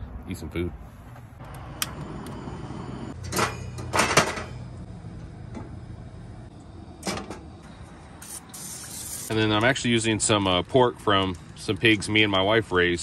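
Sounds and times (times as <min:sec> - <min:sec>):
steady low hum: 0:00.8 - 0:09.3
skillet and utensils clattering: 0:03.2 - 0:04.7.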